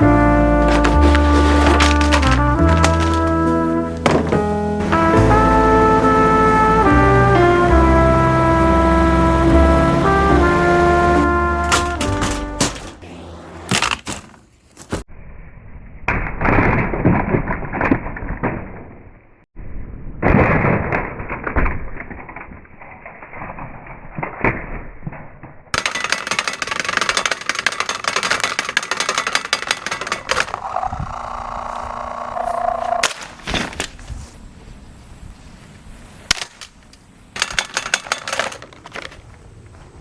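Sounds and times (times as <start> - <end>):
box fan cracking and breaking: 0.0 - 4.6, 25.8 - 34.0
hard impacts: 0.0 - 5.6.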